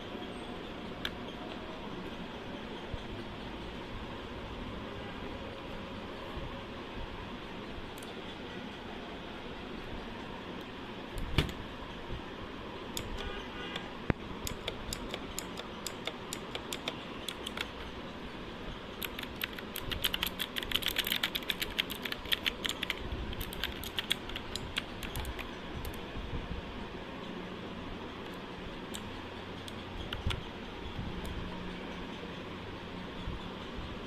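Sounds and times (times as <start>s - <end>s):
mechanical keyboard typing: 14.4s - 17.9s, 18.9s - 26.0s, 29.7s - 30.4s.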